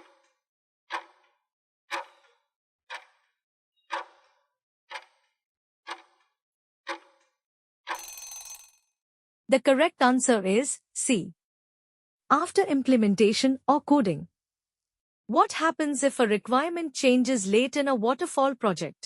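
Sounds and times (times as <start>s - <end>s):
clock ticking: 0.9s - 1.2s, 1.9s - 3.2s, 3.9s - 4.3s, 4.9s - 5.3s, 5.9s - 6.3s, 6.9s - 7.3s.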